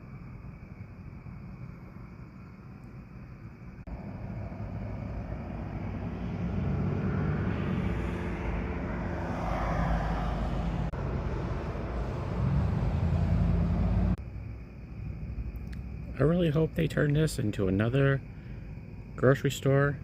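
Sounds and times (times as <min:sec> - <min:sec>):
low traffic rumble: 0:00.0 - 0:20.0
vehicle passing hiss: 0:03.9 - 0:14.2.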